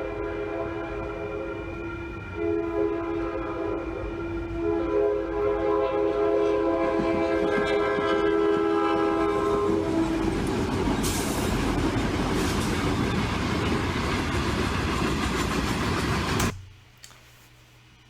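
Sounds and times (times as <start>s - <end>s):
locomotive air horn chord: 0.0s - 11.4s
train rumble and wheel clatter: 0.0s - 16.6s.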